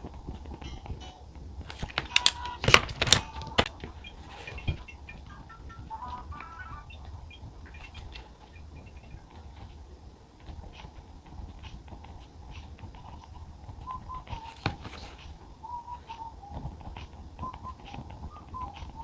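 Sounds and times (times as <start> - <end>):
steady low hum: 0.0 - 19.0
bird-like chirps: 3.8 - 9.6, 13.1 - 19.0.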